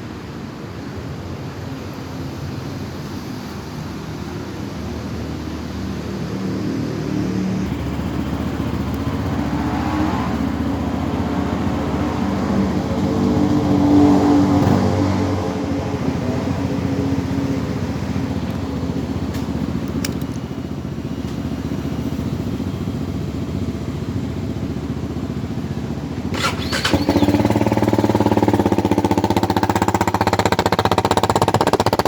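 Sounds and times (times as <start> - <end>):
motorcycle engine running: 7.2 - 32.0.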